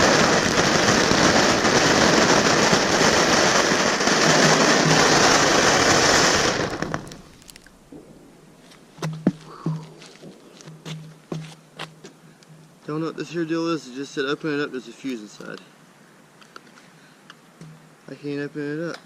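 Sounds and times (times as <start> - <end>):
firework crackling: 0.0 - 10.7.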